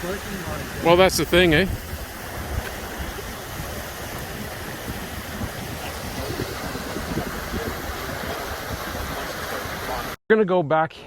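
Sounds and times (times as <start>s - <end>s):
river water rushing: 0.0s - 10.2s.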